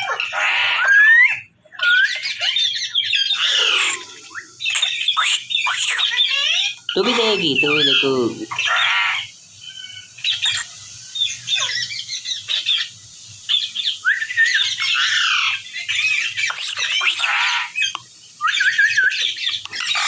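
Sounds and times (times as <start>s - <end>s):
parakeet squawking and chirping: 2.0s - 9.2s, 10.2s - 10.8s, 16.4s - 17.9s, 19.5s - 20.0s.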